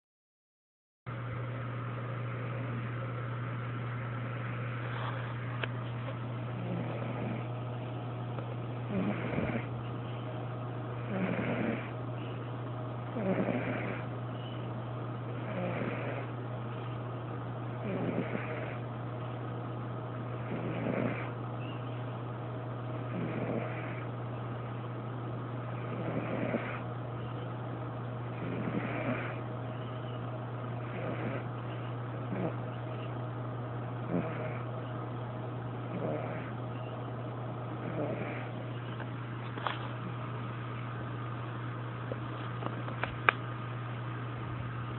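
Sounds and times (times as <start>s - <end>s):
steady low hum: 1.1s - 44.9s
cat snoring: 6.6s - 7.5s, 8.9s - 9.8s, 11.0s - 12.0s, 13.1s - 14.1s, 15.3s - 16.4s, 17.8s - 18.8s, 20.3s - 21.4s, 23.1s - 24.1s, 25.7s - 26.9s, 28.3s - 29.5s, 30.8s - 33.1s, 34.0s - 34.7s, 35.8s - 36.8s, 37.8s - 38.6s.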